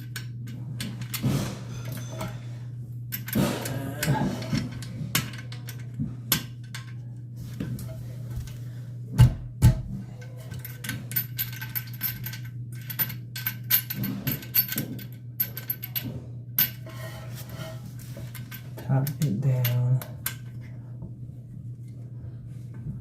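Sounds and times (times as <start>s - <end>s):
metal washers and nuts clinking: 0.0s - 2.4s, 9.7s - 20.6s
steady low hum: 0.0s - 23.0s.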